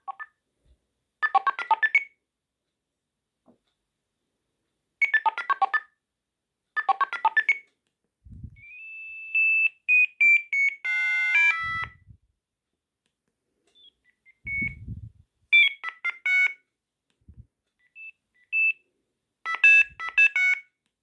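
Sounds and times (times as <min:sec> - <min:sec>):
phone ringtone melodies: 0:10.8 - 0:12.0.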